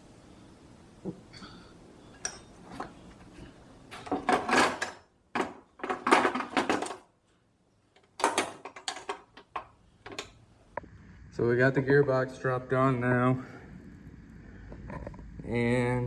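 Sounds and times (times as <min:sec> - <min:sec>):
metal tools clanking: 0:02.2 - 0:03.0, 0:03.9 - 0:07.1, 0:08.2 - 0:10.4.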